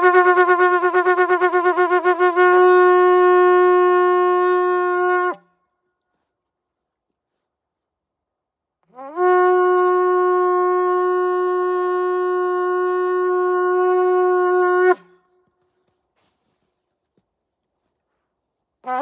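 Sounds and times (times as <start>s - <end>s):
shofar blast: 0.0s - 5.4s, 8.9s - 15.2s.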